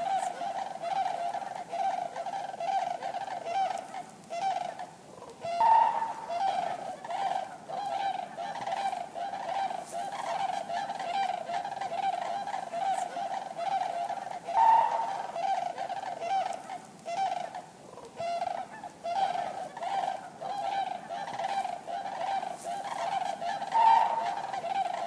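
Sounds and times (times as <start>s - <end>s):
cranes trumpeting: 5.4s - 8.1s, 9.0s - 16.6s, 23.0s - 25.0s.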